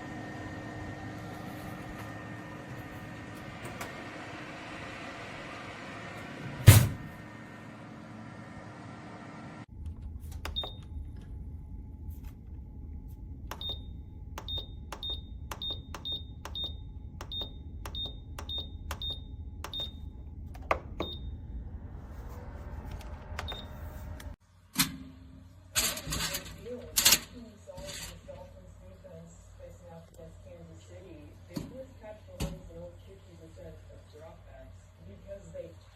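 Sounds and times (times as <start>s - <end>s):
appliance low rumble: 0.0s - 24.4s
air fryer short high beeps: 13.5s - 20.1s
control clicks: 13.5s - 21.2s.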